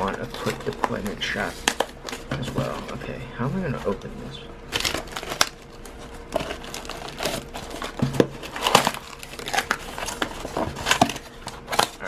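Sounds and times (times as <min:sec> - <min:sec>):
packaging crinkling and tearing: 0:00.0 - 0:03.0, 0:04.7 - 0:12.0.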